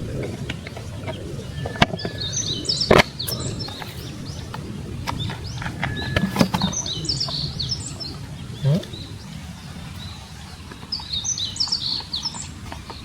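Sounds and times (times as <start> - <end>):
low background rumble: 0.0 - 13.0
small birds chirping: 0.0 - 13.0.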